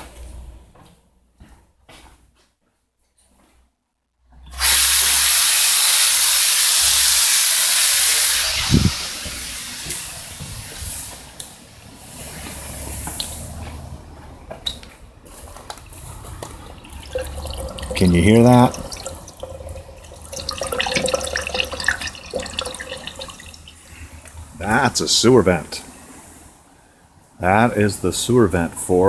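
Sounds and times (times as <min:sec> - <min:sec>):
water running into a sink: 0:04.6 - 0:11.4, 0:15.7 - 0:24.4.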